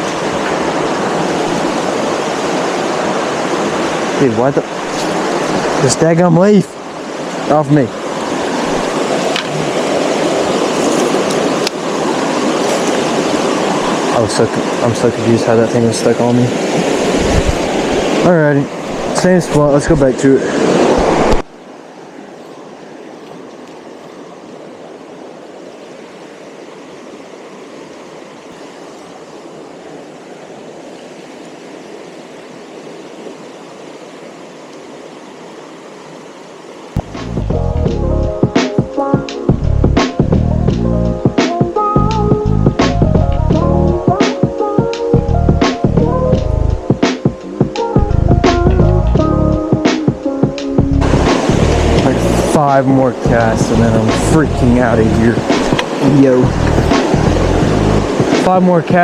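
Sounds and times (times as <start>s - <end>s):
stream water running over rocks: 0.0s - 37.4s, 49.7s - 59.0s.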